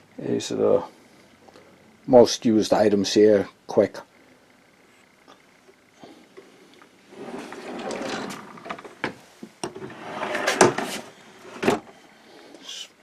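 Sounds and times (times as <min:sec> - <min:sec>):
drawers sliding open and shut: 0:07.1 - 0:11.9.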